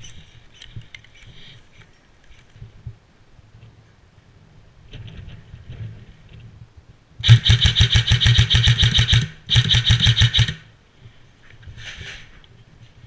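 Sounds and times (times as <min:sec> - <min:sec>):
airsoft rifle firing bursts: 0:07.2 - 0:10.7.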